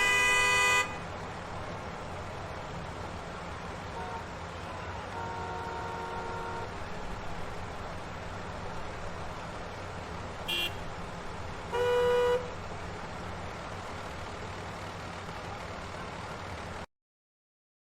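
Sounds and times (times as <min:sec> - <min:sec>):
car horn blast: 0:00.0 - 0:01.0, 0:04.9 - 0:06.8, 0:10.5 - 0:10.9, 0:11.7 - 0:12.5
traffic rumble: 0:00.0 - 0:16.9
high-pitched horn toot: 0:10.5 - 0:10.8.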